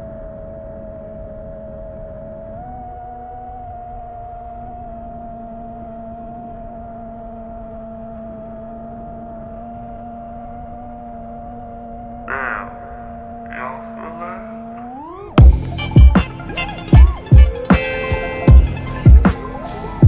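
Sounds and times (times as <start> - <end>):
quadcopter motors whining: 0.5 - 15.5.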